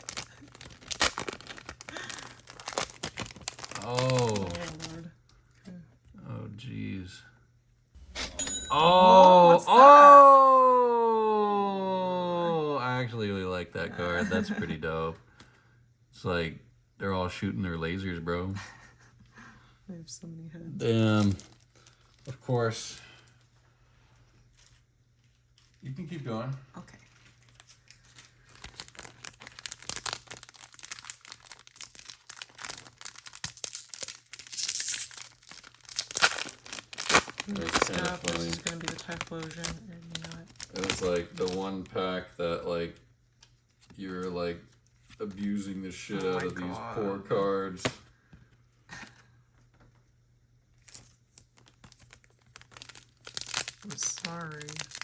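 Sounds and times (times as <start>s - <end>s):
foil wrapper crinkling: 0.0s - 5.1s, 21.0s - 23.3s, 27.0s - 42.2s, 50.8s - 55.0s
foil wrapper ripping: 0.0s - 5.1s, 27.1s - 42.1s, 50.8s - 55.0s.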